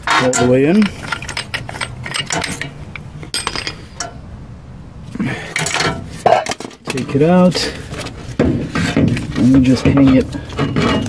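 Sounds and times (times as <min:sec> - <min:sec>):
hand tools clinking on metal: 0:00.0 - 0:04.2, 0:05.4 - 0:07.7, 0:08.8 - 0:11.0.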